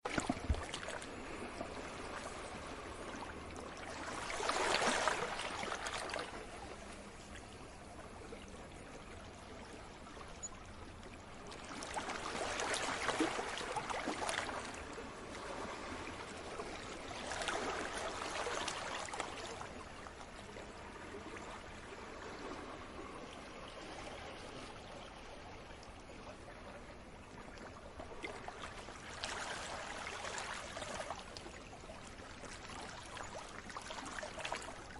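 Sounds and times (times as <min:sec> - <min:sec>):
sea waves washing in: 0:00.1 - 0:06.6.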